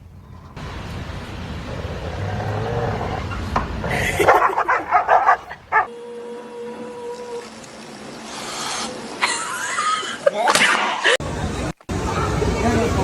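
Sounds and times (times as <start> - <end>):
dog barking rapidly: 4.1 - 5.9.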